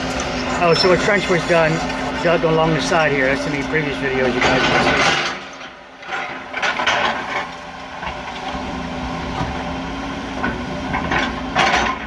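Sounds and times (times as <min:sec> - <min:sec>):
machine knocks and clanks: 0:00.0 - 0:08.2
excavator diesel engine running: 0:00.0 - 0:12.0.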